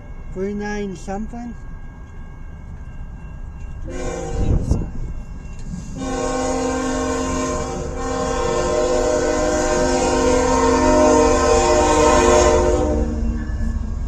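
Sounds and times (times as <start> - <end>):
train rumble: 0.0 - 14.0
locomotive air horn blasts: 3.9 - 4.6, 6.0 - 13.3.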